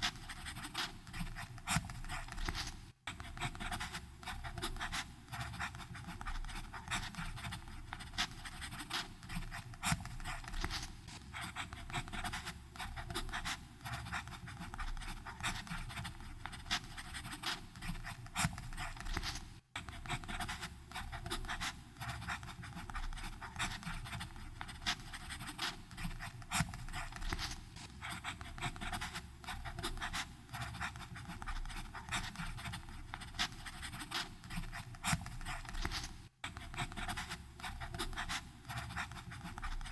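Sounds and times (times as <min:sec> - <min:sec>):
pen nib scratching on paper: 0:00.0 - 0:39.9.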